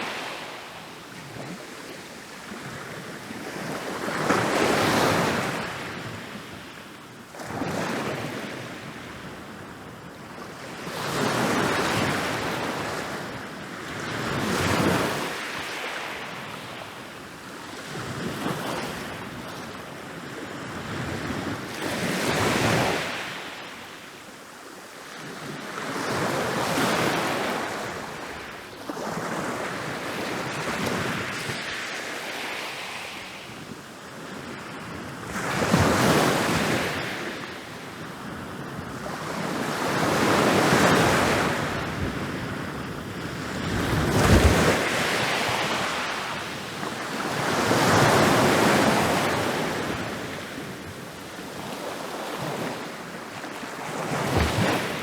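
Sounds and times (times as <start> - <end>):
ocean waves breaking on beach: 25.7 - 55.0.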